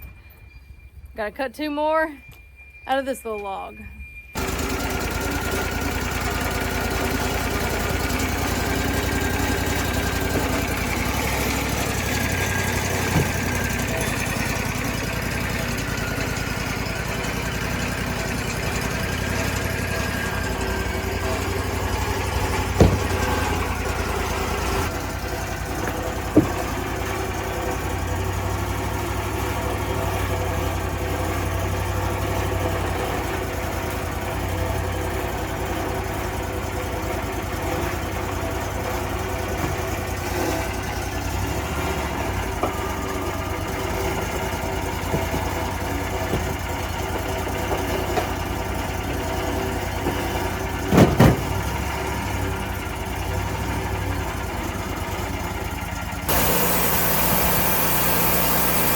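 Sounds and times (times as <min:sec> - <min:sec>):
sawmill engine running: 0:04.4 - 0:58.9
short sharp knocks: 0:22.6 - 0:23.6.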